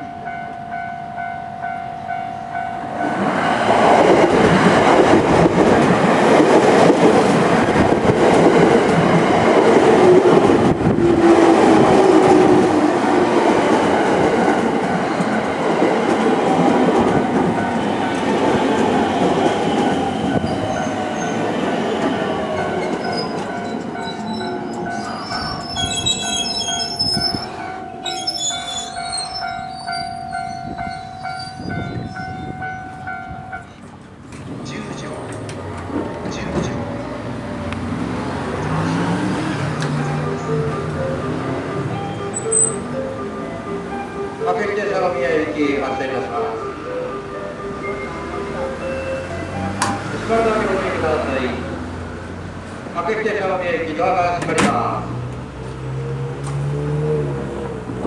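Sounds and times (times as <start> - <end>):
brakes squealing: 19.9 - 44.3.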